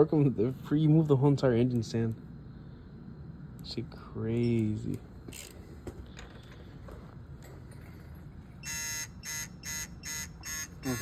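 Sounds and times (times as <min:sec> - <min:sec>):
rapid electronic beeping: 0:08.6 - 0:11.0.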